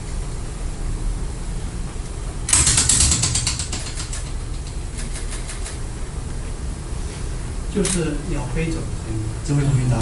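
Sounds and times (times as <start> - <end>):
bird wings flapping: 2.6 - 5.8.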